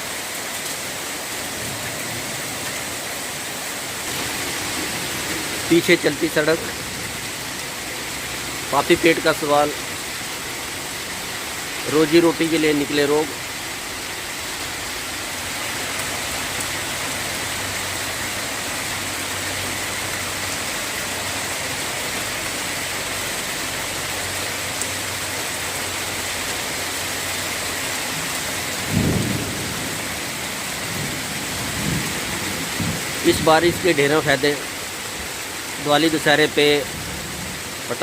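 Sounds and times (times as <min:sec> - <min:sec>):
heavy rain pouring: 0:00.0 - 0:38.0.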